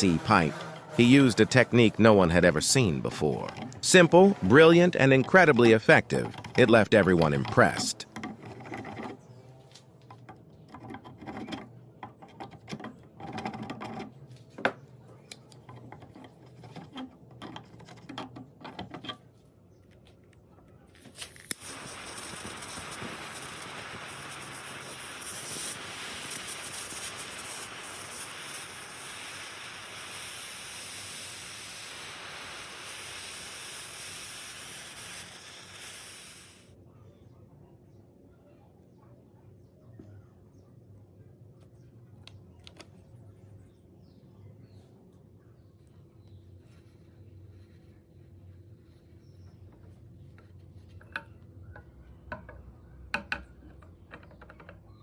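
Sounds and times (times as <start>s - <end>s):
steady high hiss: 21.2s - 36.8s.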